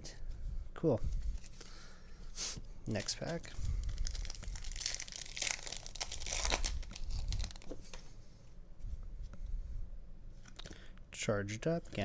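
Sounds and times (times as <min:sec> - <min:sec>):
foil wrapper tearing and crinkling: 0:02.9 - 0:07.7.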